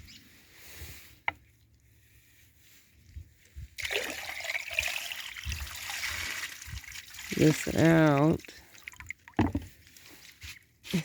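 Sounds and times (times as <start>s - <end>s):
water trickling and splashing: 3.1s - 11.0s.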